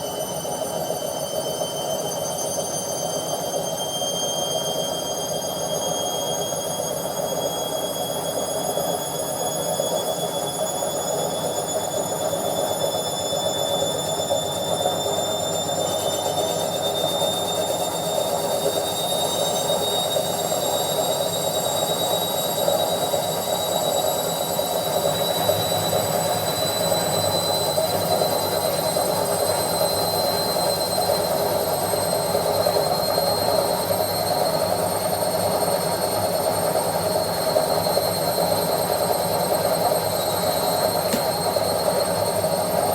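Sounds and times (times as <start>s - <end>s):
washing machine spinning: 0.0s - 42.9s
high motor whine: 10.1s - 42.9s.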